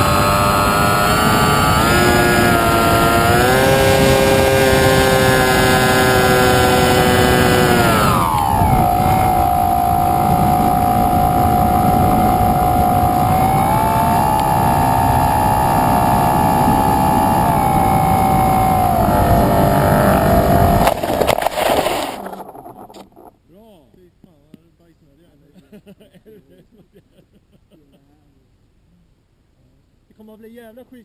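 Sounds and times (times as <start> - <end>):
model airplane motor and propeller: 0.0 - 23.3
wind rush: 0.0 - 23.3.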